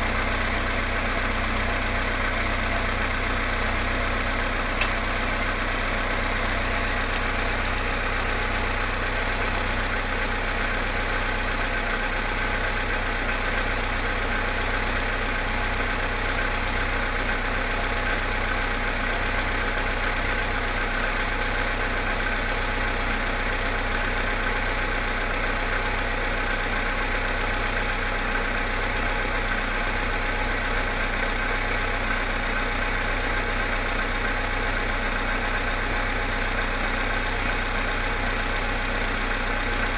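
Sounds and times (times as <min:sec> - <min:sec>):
car engine idling with knock: 0:00.0 - 0:39.9.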